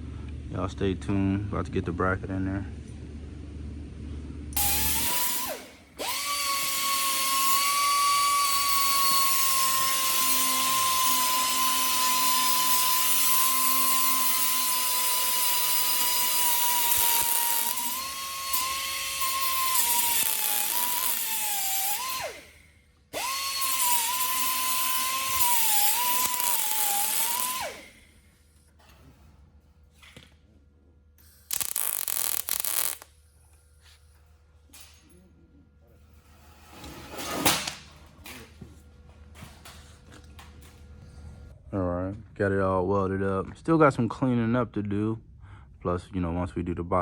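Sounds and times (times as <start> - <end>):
power tool whining on metal: 4.6 - 28.5, 31.4 - 33.1.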